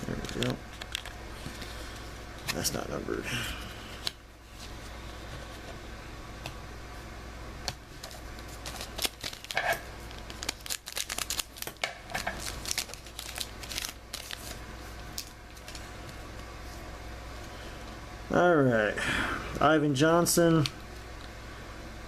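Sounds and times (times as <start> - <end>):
cards rustling and snapping: 0.1 - 1.7, 7.7 - 16.2
wrapper crinkling: 8.0 - 15.8.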